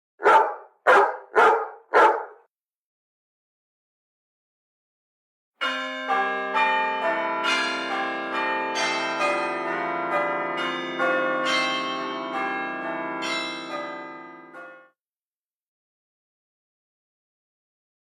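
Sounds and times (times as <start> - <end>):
church bell ringtone: 5.6 - 15.0.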